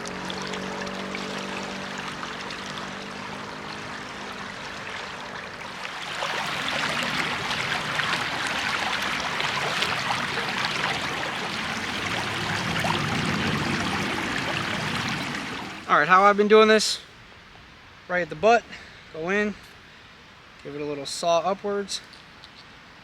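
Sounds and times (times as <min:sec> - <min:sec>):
creek water trickling: 0:00.0 - 0:16.3.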